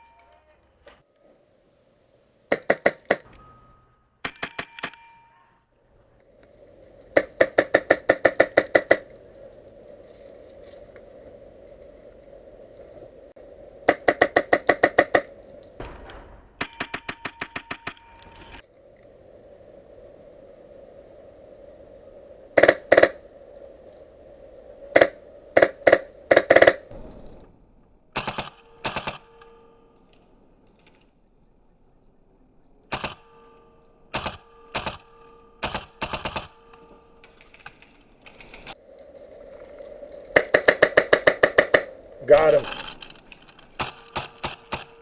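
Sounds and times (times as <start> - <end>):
airsoft rifles firing: 2.5 - 3.3, 7.2 - 9.1, 13.9 - 18.0, 22.6 - 23.2, 25.0 - 26.9, 40.4 - 42.0.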